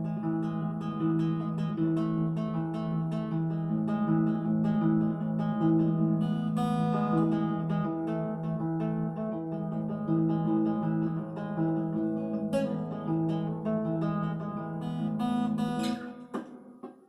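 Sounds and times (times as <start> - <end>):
acoustic guitar picked chords: 0.0 - 17.0
strummed guitar chord: 0.0 - 17.0.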